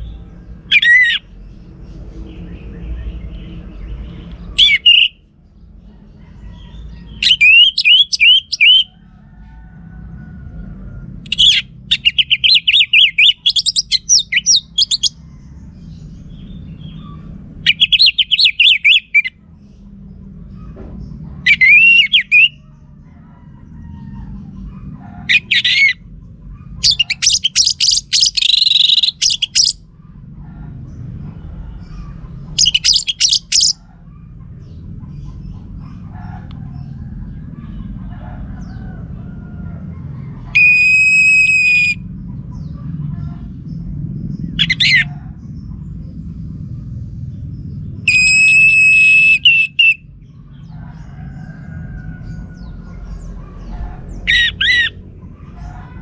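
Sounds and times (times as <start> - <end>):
thrush singing: 0.0 - 1.4, 4.4 - 5.2, 7.1 - 8.9, 11.2 - 15.2, 17.5 - 19.3, 21.5 - 22.6, 25.3 - 26.0, 26.8 - 29.8, 32.0 - 33.8, 40.5 - 42.0, 44.6 - 45.1, 52.2 - 56.0
faint low hum: 0.0 - 56.0.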